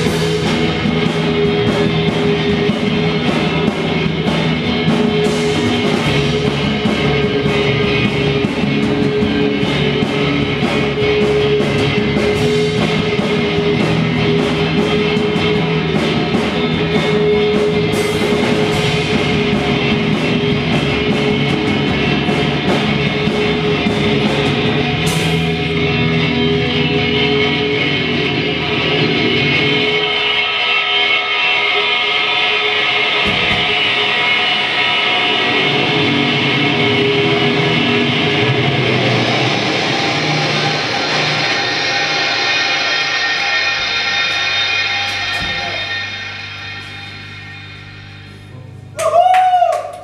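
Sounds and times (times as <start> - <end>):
rock band playing live: 0.0 - 48.7
cymbal strokes: 0.0 - 49.0.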